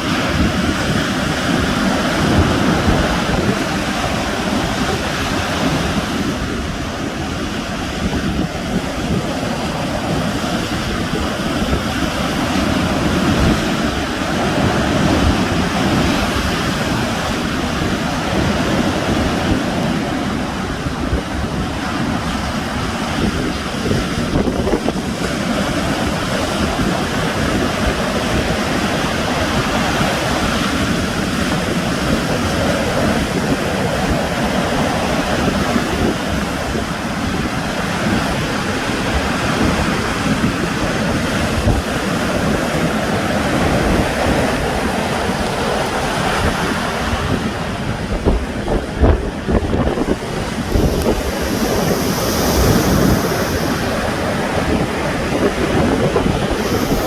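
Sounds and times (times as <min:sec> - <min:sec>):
sea waves surf: 0:00.0 - 0:57.0
wind buffeting microphone: 0:00.0 - 0:57.0
high hiss: 0:50.6 - 0:54.4, 0:56.4 - 0:57.0.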